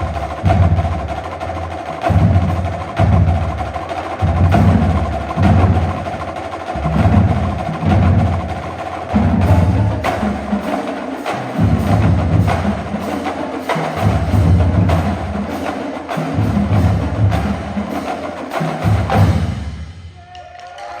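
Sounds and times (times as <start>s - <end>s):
marching drumline playing: 0.0s - 20.3s.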